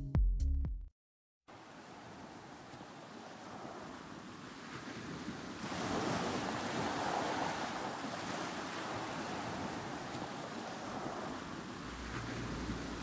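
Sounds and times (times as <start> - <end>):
wave wash running up shore: 1.5 - 13.0
wave breaking: 4.7 - 13.0.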